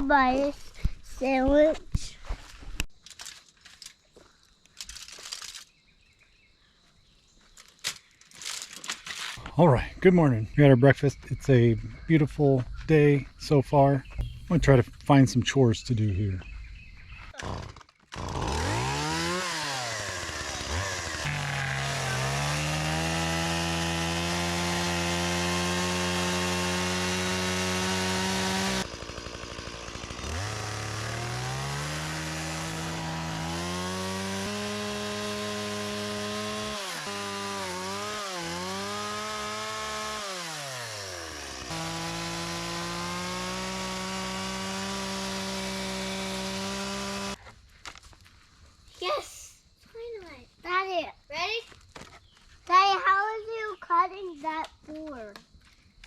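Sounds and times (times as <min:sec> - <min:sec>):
chainsaw cutting wood: 0:17.4 - 0:47.4.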